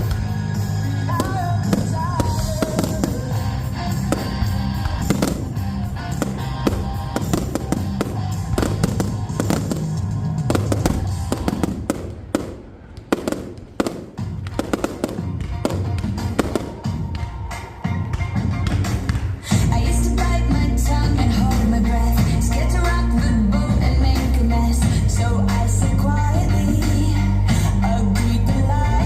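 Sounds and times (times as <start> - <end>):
fireworks bangs and crackles: 0.0 - 19.5
music: 0.0 - 29.0.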